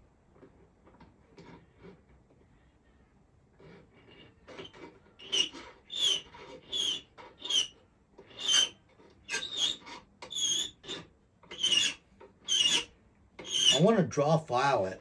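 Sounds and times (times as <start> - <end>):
hand file rasping on metal: 3.6 - 14.0.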